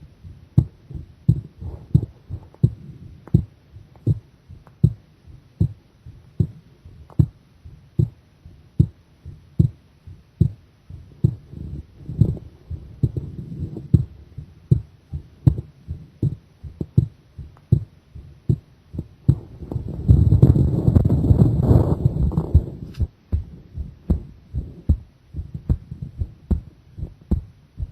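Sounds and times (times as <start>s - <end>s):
heartbeat thumps: 0.0s - 27.9s
low rumbling rush: 18.5s - 27.9s.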